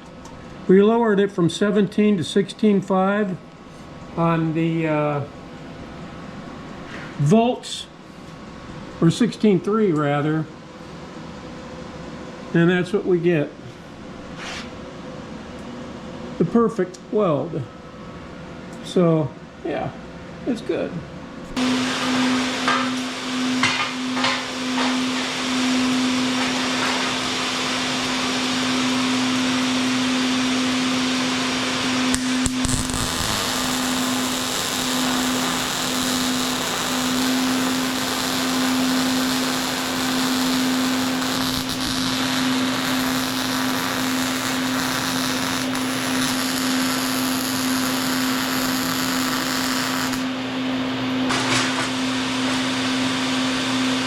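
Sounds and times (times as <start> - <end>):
angle grinder grinding steel: 32.6 - 50.2.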